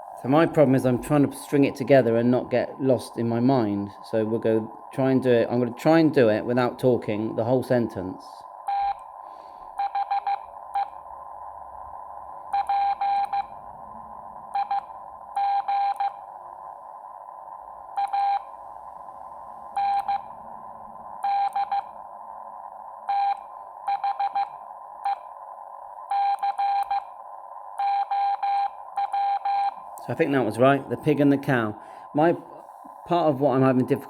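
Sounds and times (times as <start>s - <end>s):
steady hiss: 0.0s - 8.6s, 29.8s - 34.0s
morse code beeps: 8.7s - 9.0s, 9.8s - 10.9s, 12.6s - 13.5s, 14.6s - 16.2s, 18.0s - 18.5s, 19.8s - 20.3s, 21.2s - 21.9s, 23.1s - 25.2s, 26.1s - 27.1s, 27.8s - 29.8s.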